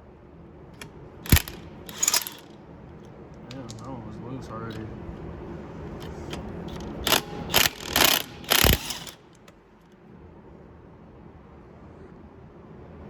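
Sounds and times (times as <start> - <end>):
wrench rattling on lug nut: 0.8 - 2.5, 3.4 - 4.0, 6.0 - 9.5.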